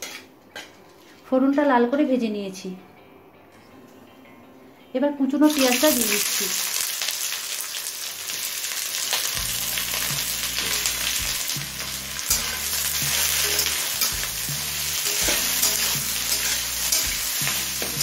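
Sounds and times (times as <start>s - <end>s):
onions sizzling in hot oil: 5.5s - 18.0s.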